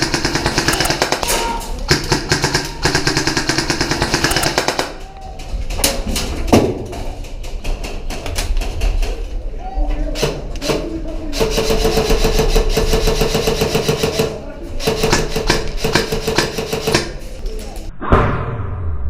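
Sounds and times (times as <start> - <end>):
airsoft gun rapid firing: 0.0 - 5.0, 11.4 - 17.3.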